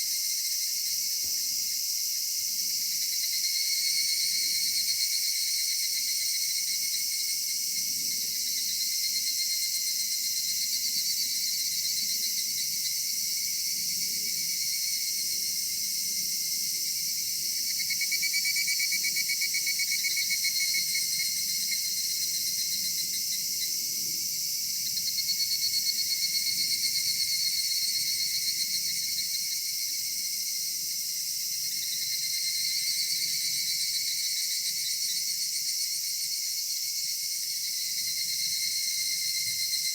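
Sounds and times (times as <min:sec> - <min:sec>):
cicadas chorus droning: 0:00.0 - 0:39.9.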